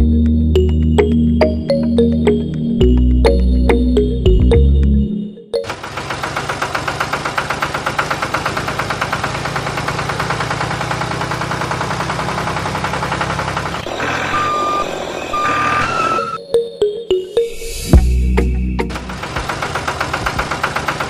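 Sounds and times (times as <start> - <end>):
tractor engine chugging: 5.6 - 16.2, 18.0 - 21.0
short high beeps: 13.9 - 16.4.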